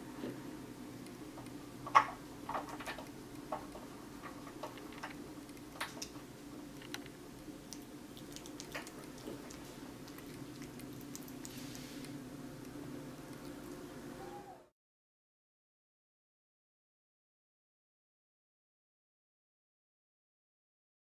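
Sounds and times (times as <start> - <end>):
steady low hum: 0.0 - 14.7
kitten chewing and licking: 2.6 - 14.0.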